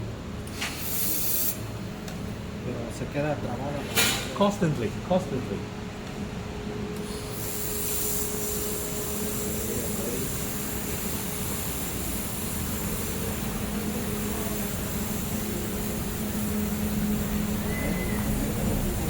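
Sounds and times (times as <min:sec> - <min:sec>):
laser welder whoosh and hum: 0:00.5 - 0:01.6, 0:07.1 - 0:17.6
high hiss: 0:07.0 - 0:19.0.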